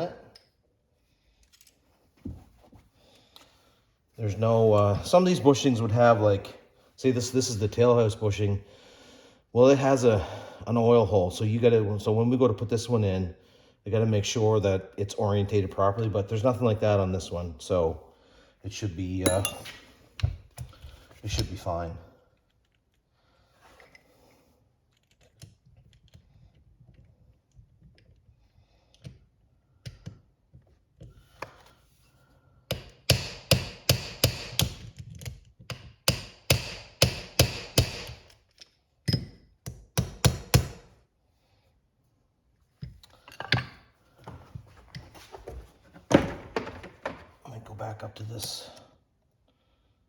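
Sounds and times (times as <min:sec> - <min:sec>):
hammer striking metal driver: 0:19.3 - 0:19.8, 0:36.1 - 0:38.2.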